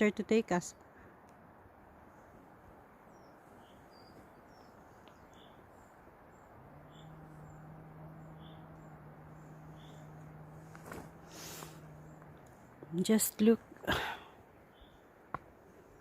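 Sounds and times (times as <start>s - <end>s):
low steady hum: 0.0s - 16.0s
small bird chirping: 3.1s - 13.6s, 14.7s - 15.2s.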